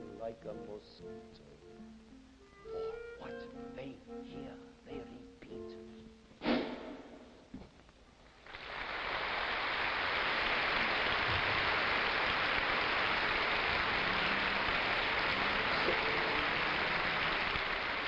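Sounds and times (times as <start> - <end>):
audience applauding: 8.3 - 18.0.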